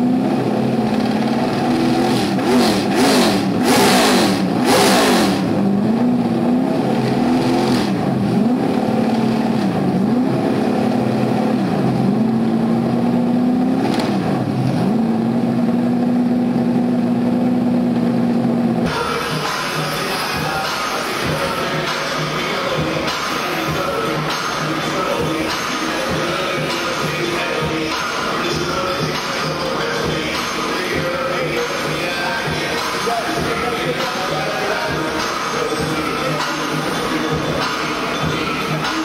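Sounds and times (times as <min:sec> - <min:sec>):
car engine revving: 0:00.0 - 0:39.0
music: 0:18.9 - 0:39.0.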